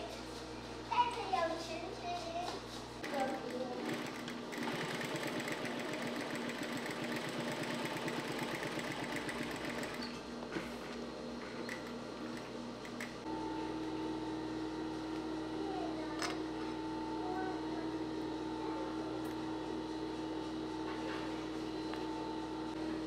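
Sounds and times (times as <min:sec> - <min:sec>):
sewing machine stitching: 0:03.0 - 0:10.2.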